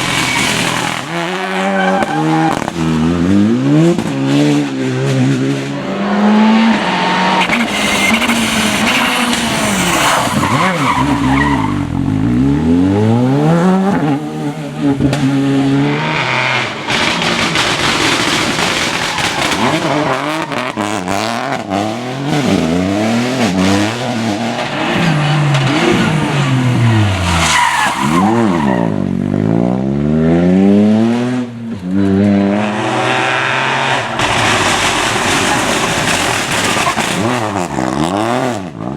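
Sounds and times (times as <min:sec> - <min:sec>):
tyres squealing and skidding: 0:00.0 - 0:02.9, 0:06.0 - 0:12.0, 0:16.0 - 0:21.6, 0:22.4 - 0:29.2, 0:32.8 - 0:38.1
rally car engines revving: 0:00.0 - 0:38.9.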